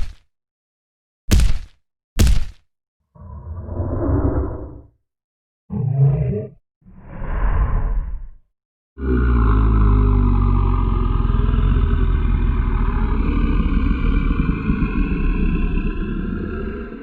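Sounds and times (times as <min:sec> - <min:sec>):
deep rough monster growl: 0:03.1 - 0:05.0, 0:05.7 - 0:08.4, 0:09.0 - 0:17.0.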